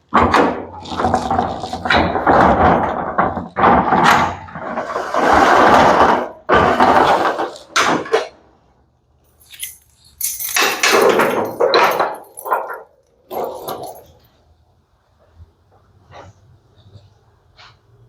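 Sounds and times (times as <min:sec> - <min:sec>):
rattling scraping clatter: 0:00.2 - 0:08.4, 0:09.4 - 0:14.4.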